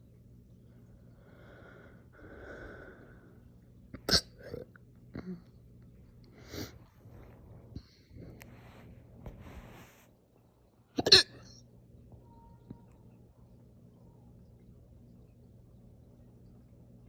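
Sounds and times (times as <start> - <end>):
soft breathing: 0.6 - 3.5, 6.3 - 10.3
person hiccuping: 4.0 - 5.4, 11.0 - 11.6.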